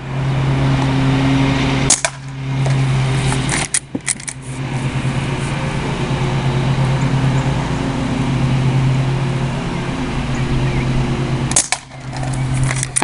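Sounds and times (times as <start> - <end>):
steady mechanical hum: 0.0 - 13.0
air rifle shot crack: 11.5 - 12.0.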